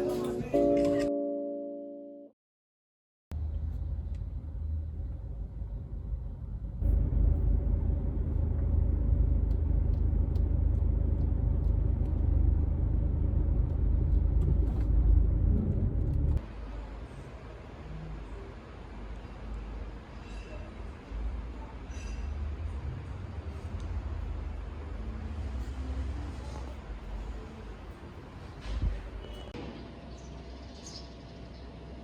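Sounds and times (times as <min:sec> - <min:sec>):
car road and engine rumble: 0:03.4 - 0:18.5.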